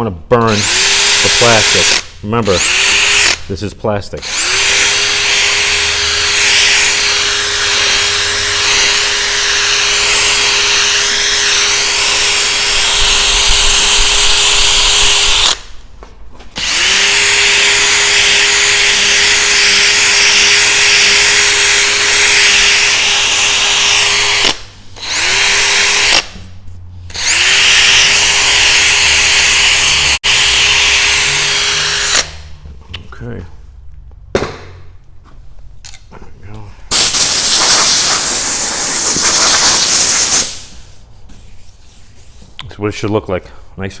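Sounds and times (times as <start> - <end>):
cordless drill motor whine: 4.2 - 15.6, 16.6 - 26.3, 27.1 - 32.3.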